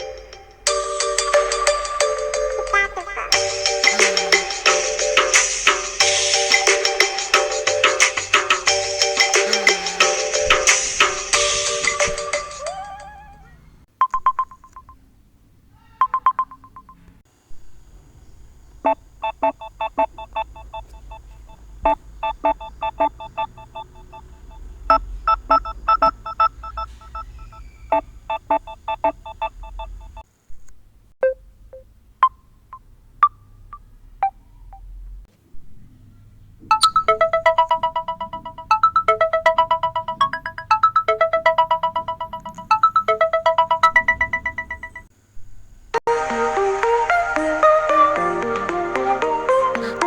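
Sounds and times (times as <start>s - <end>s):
beeping ringtone melody: 0.0s - 13.3s, 19.2s - 27.3s, 36.7s - 45.1s, 46.1s - 50.0s
held electronic ringtone tones: 19.2s - 27.3s, 36.7s - 45.1s.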